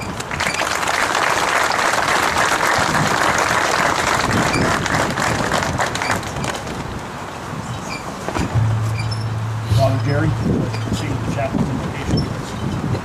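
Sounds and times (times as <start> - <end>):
crowd applauding: 0.1 - 6.6.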